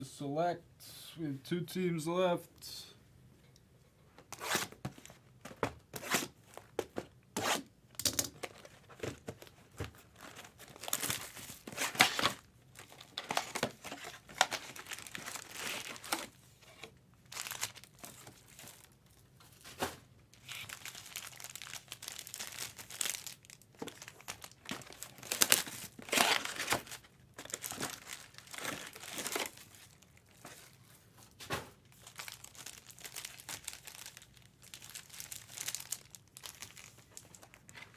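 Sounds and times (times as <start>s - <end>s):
packaging tearing and crinkling: 4.4s - 4.8s, 7.4s - 19.0s, 19.8s - 30.4s, 31.8s - 37.9s.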